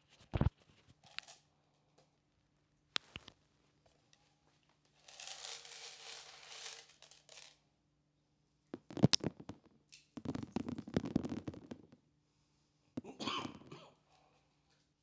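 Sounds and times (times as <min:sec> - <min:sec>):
corn kernels scattering: 0:05.0 - 0:07.6, 0:08.8 - 0:12.0.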